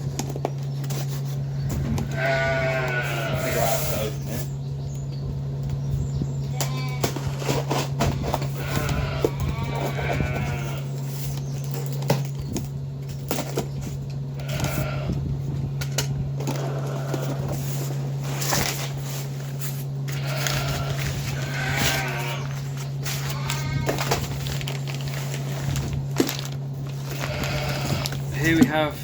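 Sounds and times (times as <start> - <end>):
low hum: 0.0 - 29.0
farm animals bleating: 1.8 - 4.5, 6.3 - 11.1, 14.3 - 18.2, 20.0 - 24.3, 26.9 - 29.0.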